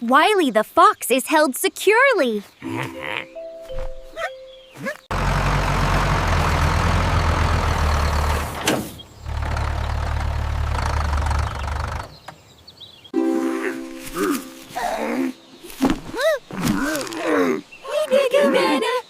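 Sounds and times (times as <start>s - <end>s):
vehicle engine humming: 3.9s - 12.4s.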